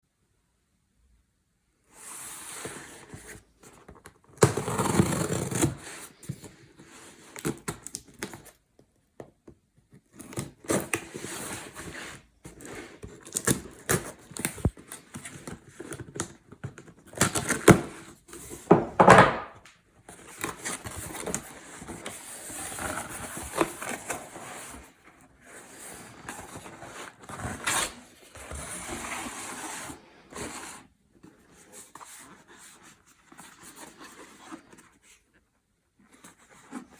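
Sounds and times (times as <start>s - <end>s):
cardboard tearing: 4.4s - 6.2s, 25.4s - 29.9s.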